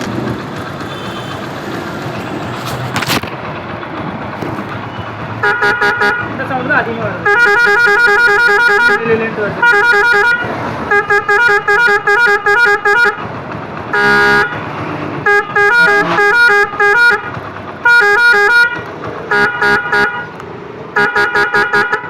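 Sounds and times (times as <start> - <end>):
horn steady blast: 0.6 - 3.3, 4.9 - 6.4, 7.2 - 13.3, 13.9 - 22.0
multi-tone horn beeps: 0.8 - 1.7, 4.9 - 6.3, 7.2 - 13.2, 13.9 - 14.6, 15.2 - 17.2, 17.8 - 20.3, 21.0 - 22.0.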